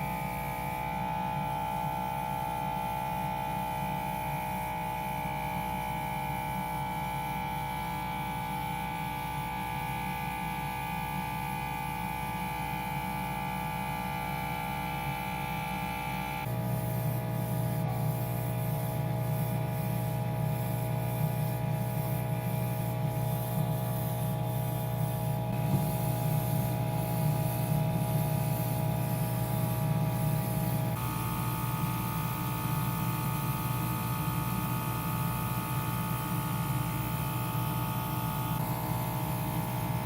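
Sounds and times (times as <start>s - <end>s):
small electric motor humming: 16.1s - 40.0s.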